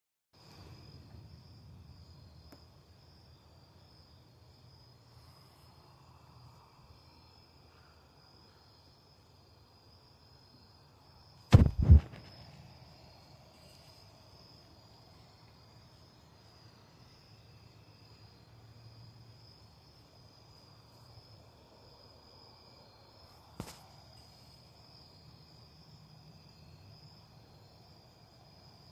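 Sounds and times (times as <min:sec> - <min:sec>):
insect chirring: 0:00.4 - 0:28.9
sharp knocks: 0:11.5 - 0:12.3.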